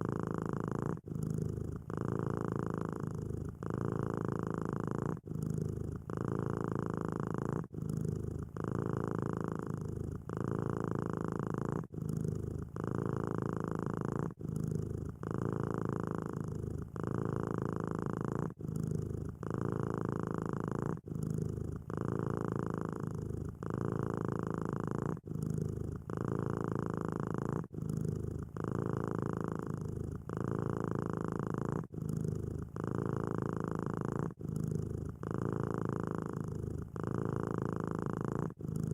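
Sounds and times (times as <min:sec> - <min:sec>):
cat purring: 0:00.0 - 0:38.9.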